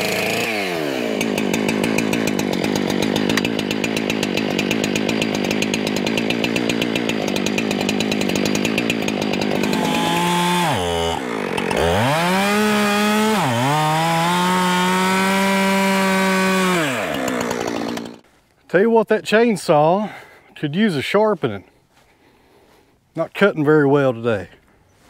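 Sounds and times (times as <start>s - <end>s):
chainsaw cutting wood: 0.0s - 18.3s.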